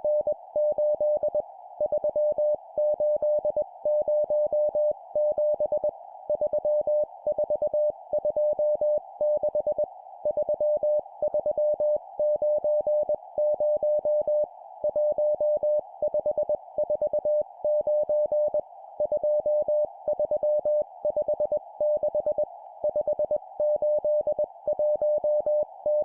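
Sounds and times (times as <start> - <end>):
morse code beeps: 15.0 - 26.0.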